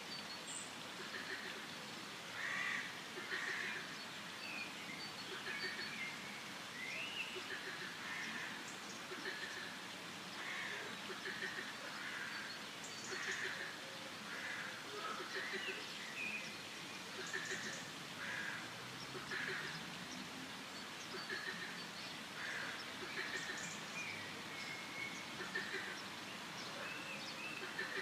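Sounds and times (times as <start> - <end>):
forest background: 0.0 - 28.0
frogs croaking: 2.3 - 4.3, 5.3 - 6.0, 7.4 - 15.8, 17.0 - 20.1, 20.8 - 24.4, 25.2 - 26.9
birds calling: 2.3 - 9.8, 10.4 - 28.0.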